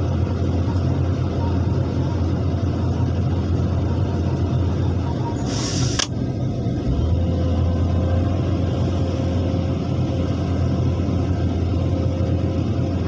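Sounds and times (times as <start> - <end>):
excavator diesel engine droning: 0.0 - 13.0
brief hiss: 5.5 - 6.1.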